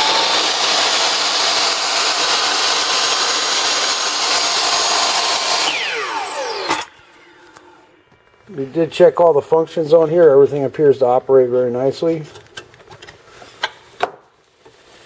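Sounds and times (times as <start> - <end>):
miter saw motor whining: 0.0 - 8.7
saw winding down: 0.0 - 9.3.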